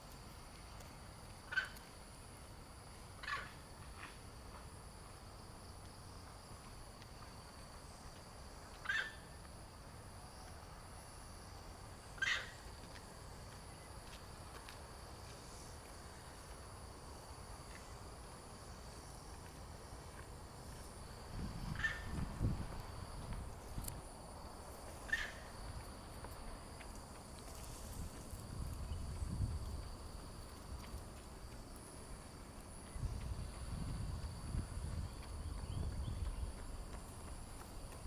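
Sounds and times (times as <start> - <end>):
faint outdoor hiss: 0.0 - 38.0
high-pitched animal calls: 8.8 - 9.2.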